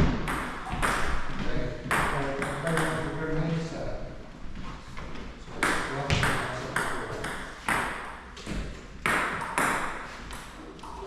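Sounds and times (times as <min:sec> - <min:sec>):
table tennis ball hits: 0:00.0 - 0:03.2, 0:05.6 - 0:10.6.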